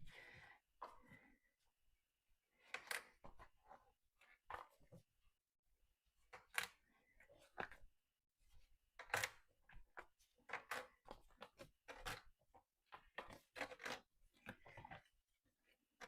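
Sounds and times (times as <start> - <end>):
resin pieces clicking and scraping: 9.0 - 9.5.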